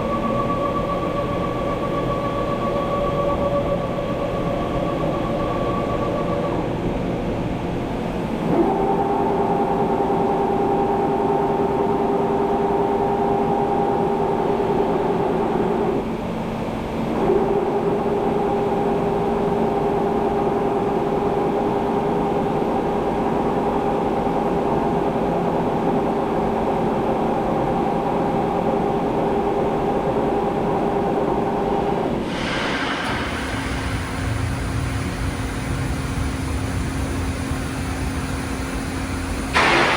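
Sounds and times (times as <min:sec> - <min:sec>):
milling machine whine and rumble: 0:00.0 - 0:39.9.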